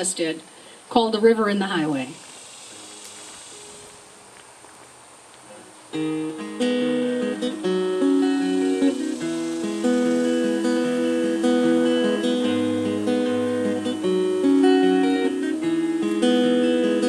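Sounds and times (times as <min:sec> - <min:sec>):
acoustic guitar picking: 0:05.5 - 0:17.0.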